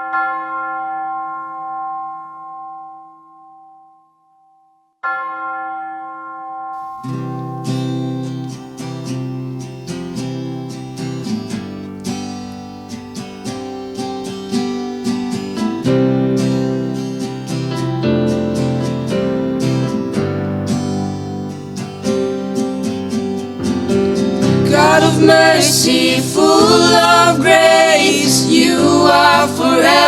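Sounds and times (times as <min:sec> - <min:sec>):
acoustic guitar strumming: 0:06.8 - 0:30.0.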